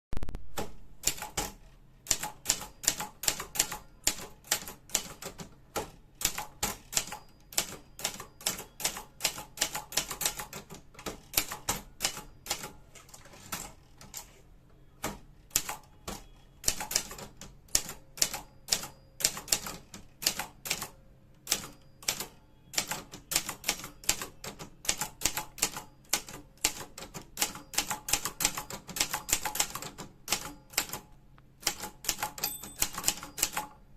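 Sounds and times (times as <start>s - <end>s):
typewriter key strikes: 31.6s - 33.7s.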